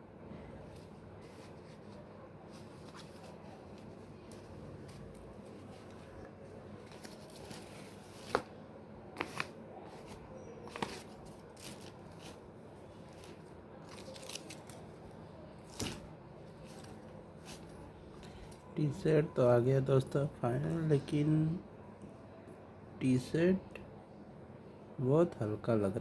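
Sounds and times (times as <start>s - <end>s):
package rustling: 1.2s - 8.6s, 9.2s - 12.4s, 13.0s - 15.0s.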